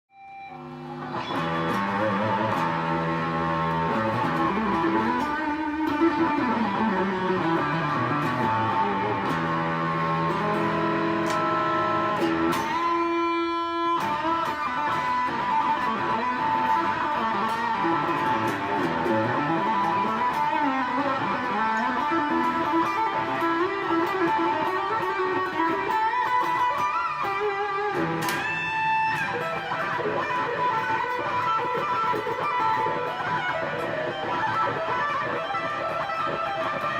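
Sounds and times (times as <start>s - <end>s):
distorted electric guitar: 0.1s - 36.9s.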